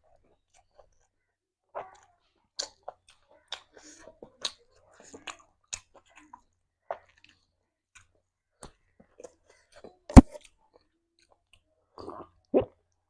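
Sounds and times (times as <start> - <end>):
person chewing food: 0.1 - 1.1, 1.8 - 12.8.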